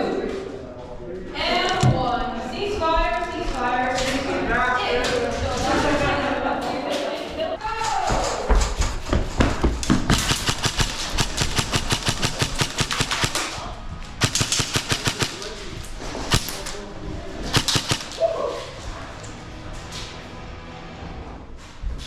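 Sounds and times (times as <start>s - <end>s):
airsoft rifles firing bursts: 10.1s - 16.8s, 17.5s - 18.4s.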